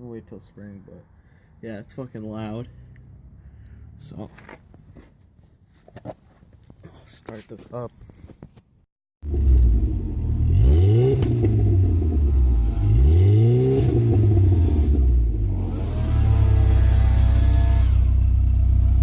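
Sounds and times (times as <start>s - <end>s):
pickup engine starting and revving: 9.2s - 19.0s.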